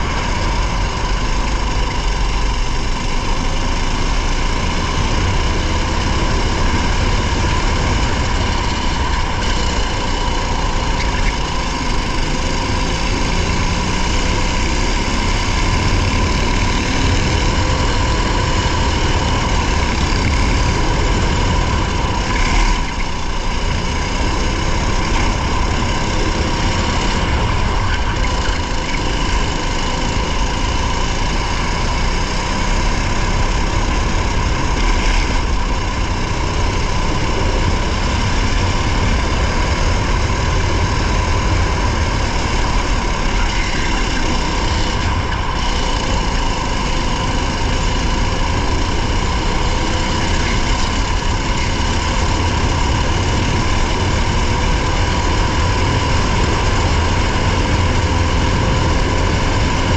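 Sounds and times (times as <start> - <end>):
racing engine noise: 0.0 - 59.9.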